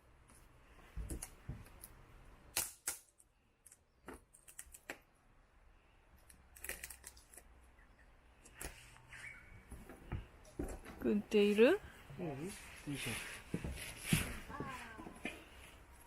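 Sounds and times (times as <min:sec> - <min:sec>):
small objects clicking and knocking: 0:06.2 - 0:07.6.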